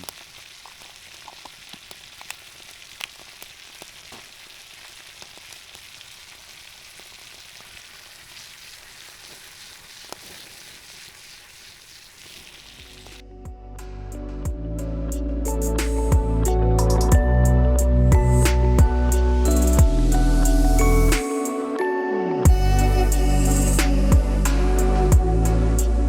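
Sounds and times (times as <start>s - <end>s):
food sizzling in a pan: 0.0s - 13.2s.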